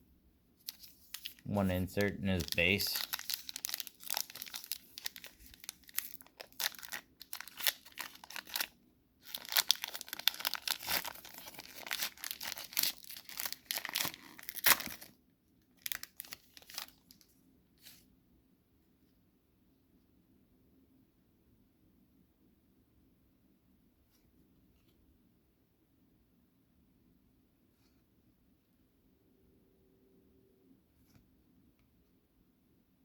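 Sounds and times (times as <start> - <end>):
foil wrappers tearing and crinkling: 0.6 - 15.1, 15.8 - 17.2.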